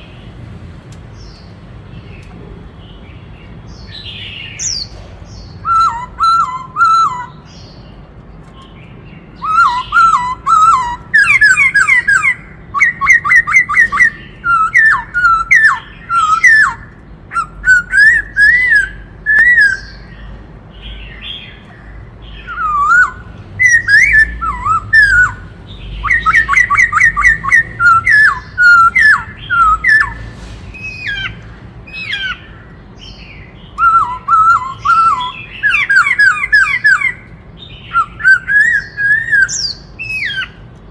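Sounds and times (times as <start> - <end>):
laughingthrush singing: 5.5 - 7.6, 9.4 - 20.3, 21.2 - 40.6.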